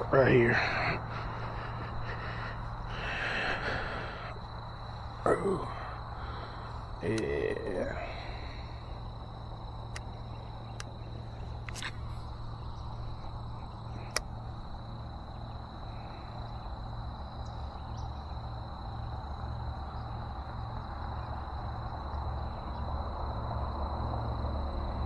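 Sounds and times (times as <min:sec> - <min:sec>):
highway traffic rumble: 0:00.0 - 0:25.0
sharp clicks: 0:09.9 - 0:11.0, 0:11.6 - 0:12.1, 0:14.0 - 0:14.4.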